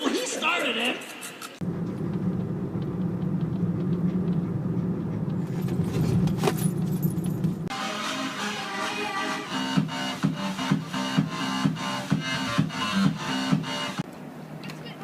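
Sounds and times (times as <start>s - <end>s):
steady low rumble: 1.6s - 7.7s.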